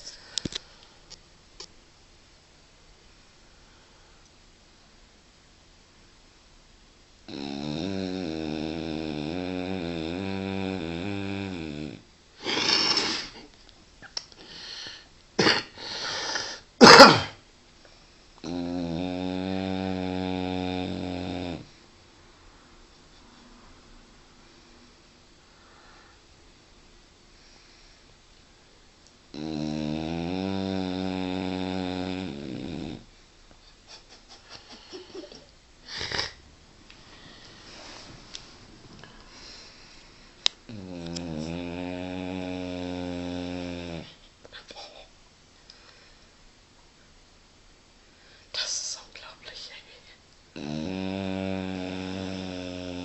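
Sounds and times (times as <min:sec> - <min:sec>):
dog snoring: 0:07.3 - 0:13.4, 0:18.4 - 0:21.8, 0:29.3 - 0:33.1, 0:40.7 - 0:44.2, 0:50.5 - 0:53.0.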